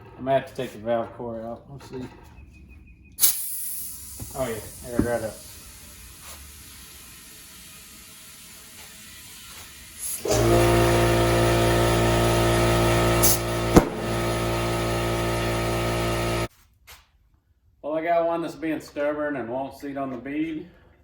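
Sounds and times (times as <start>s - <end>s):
air compressor humming: 3.2s - 16.5s.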